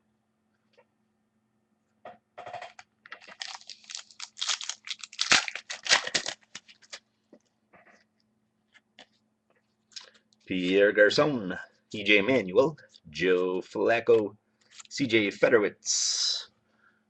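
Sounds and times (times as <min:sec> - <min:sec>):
foil wrapper crinkling and tearing: 0:03.0 - 0:07.1.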